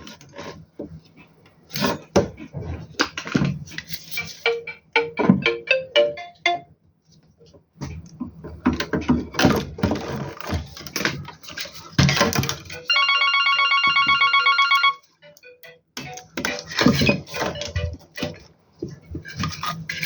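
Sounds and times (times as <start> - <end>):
rhythmic background sound: 4.1 - 6.7, 15.2 - 16.8
electronic telephone ringing: 12.8 - 16.6.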